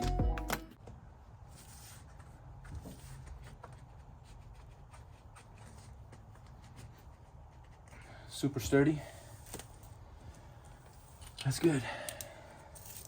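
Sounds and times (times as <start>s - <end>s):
low steady hum: 0.0s - 13.0s
light clicks and handling noises: 9.4s - 13.0s.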